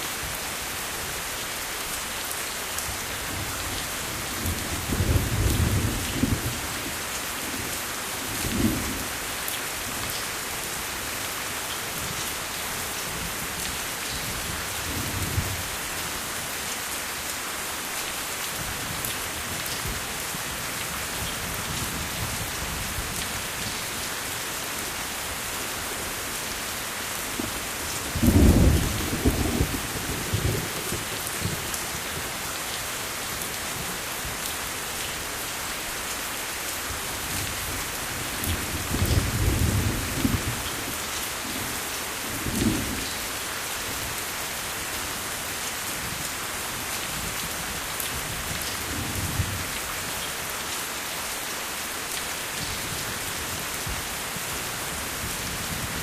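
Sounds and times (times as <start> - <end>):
steady rain: 0.0 - 56.0
thunder rumbling: 28.1 - 31.0.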